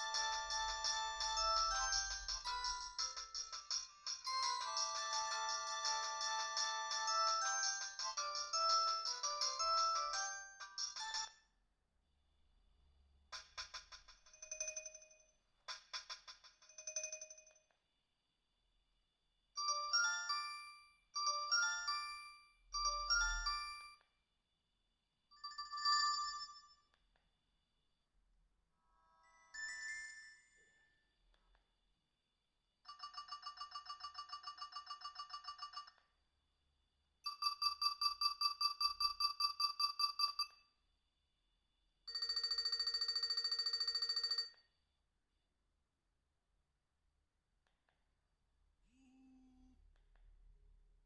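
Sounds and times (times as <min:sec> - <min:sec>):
phone ringtone melody: 0:00.0 - 0:11.3, 0:19.7 - 0:24.0.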